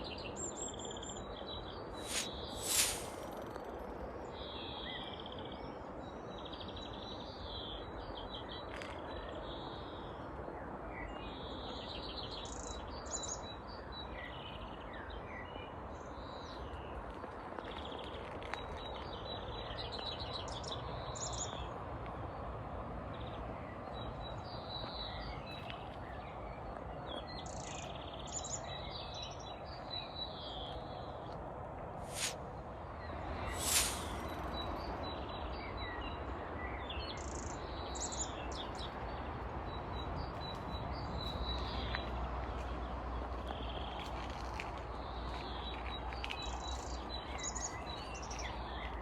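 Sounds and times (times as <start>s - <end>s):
birds chirping and trilling: 0.0s - 3.7s
sharp loud sounds: 2.0s - 3.3s, 33.4s - 34.4s.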